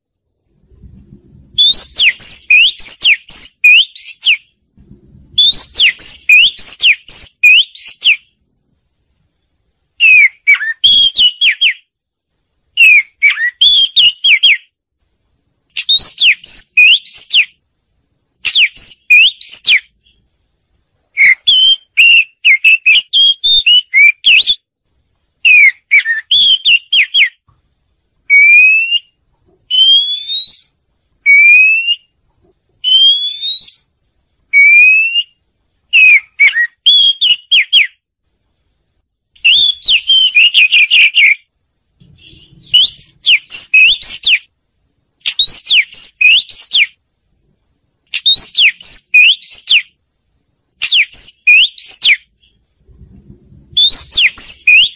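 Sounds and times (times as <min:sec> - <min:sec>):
bird whistled song: 0:01.4 - 0:04.6, 0:05.2 - 0:08.4, 0:10.0 - 0:11.9, 0:12.8 - 0:14.7, 0:15.7 - 0:17.6, 0:18.4 - 0:20.2, 0:21.1 - 0:24.7, 0:25.4 - 0:27.4, 0:28.3 - 0:32.2, 0:32.8 - 0:33.9, 0:34.5 - 0:38.0, 0:39.4 - 0:44.5, 0:45.2 - 0:47.0, 0:48.1 - 0:50.0, 0:50.8 - 0:52.6, 0:53.7 - 0:54.9.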